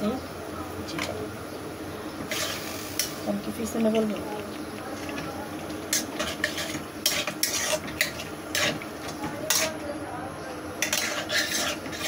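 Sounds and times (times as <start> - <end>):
spoon scraping and clinking pot: 5.9 - 8.8, 9.4 - 9.8, 10.8 - 12.0.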